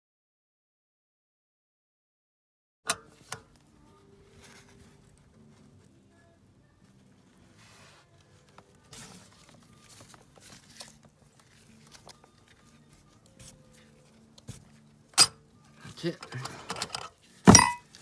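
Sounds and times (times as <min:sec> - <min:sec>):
metal parts clicking and knocking: 0:16.2 - 0:18.0.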